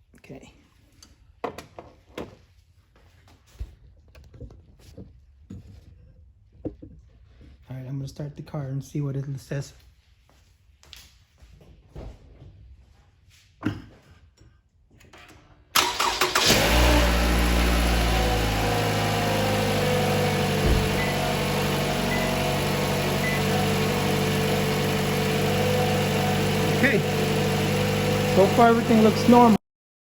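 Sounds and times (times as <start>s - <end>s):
starter cranking: 15.8s - 19.2s
car engine idling: 15.8s - 29.6s.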